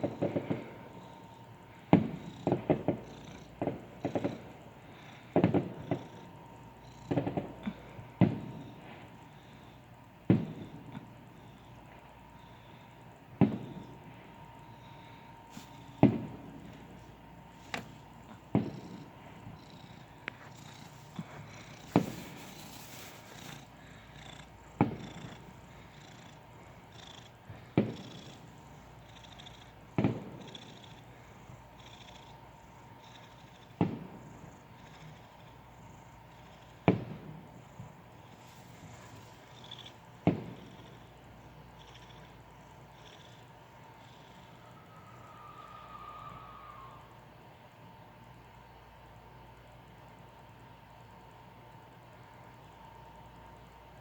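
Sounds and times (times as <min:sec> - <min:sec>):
fireworks bangs: 0:00.0 - 0:00.9, 0:01.9 - 0:04.5, 0:05.3 - 0:06.2, 0:07.1 - 0:09.2, 0:10.2 - 0:10.9, 0:13.4 - 0:14.1, 0:15.4 - 0:25.5, 0:27.5 - 0:28.4, 0:30.0 - 0:30.5, 0:33.8 - 0:34.2, 0:36.8 - 0:37.4, 0:40.2 - 0:40.8.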